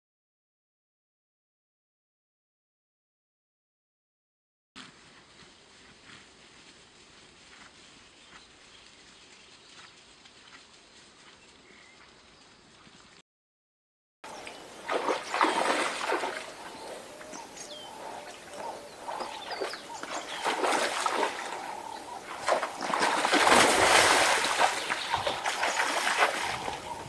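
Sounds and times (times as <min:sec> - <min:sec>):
bird chirp: 0:11.3 - 0:12.8, 0:14.3 - 0:27.0
water splashing: 0:14.3 - 0:27.0.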